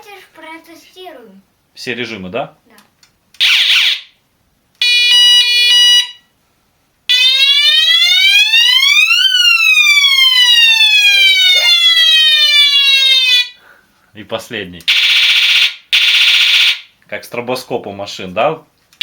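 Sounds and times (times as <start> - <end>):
electronic bicycle siren horn: 3.4 - 4.1, 4.8 - 6.3, 9.8 - 13.6, 14.9 - 16.9.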